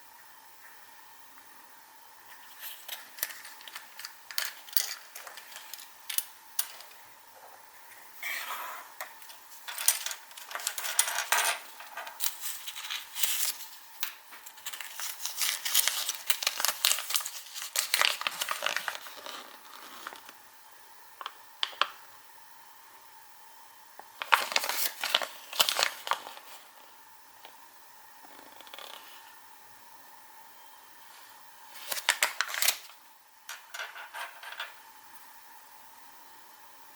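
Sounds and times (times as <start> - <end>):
foil wrapper crinkling and tearing: 2.3 - 6.9, 12.1 - 20.4, 24.2 - 26.8, 31.7 - 33.0.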